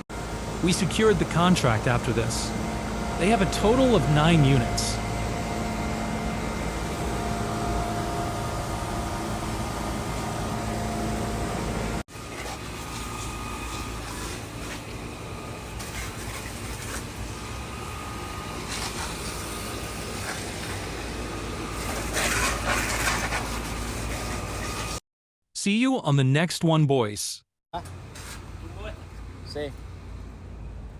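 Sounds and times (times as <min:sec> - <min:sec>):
air conditioning units humming: 0:00.1 - 0:25.0.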